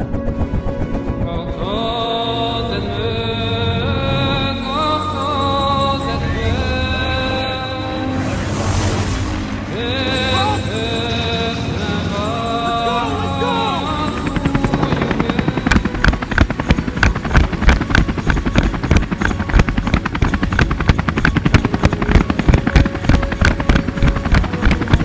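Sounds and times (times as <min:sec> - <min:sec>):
music: 0:00.0 - 0:25.0
rapid even thuds: 0:14.6 - 0:25.0.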